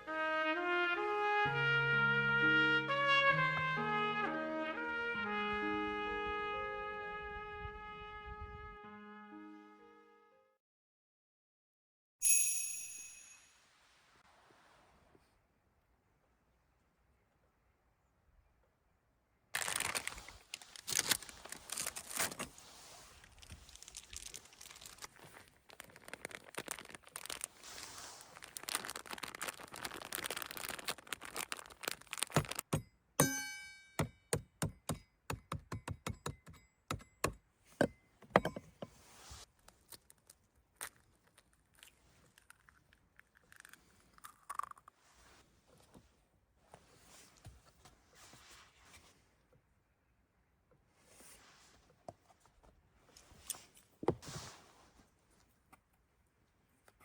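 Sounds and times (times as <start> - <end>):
crinkling: 19.5 - 32.7, 38.7 - 49.4
objects clattering and knocking: 37.8 - 39.0.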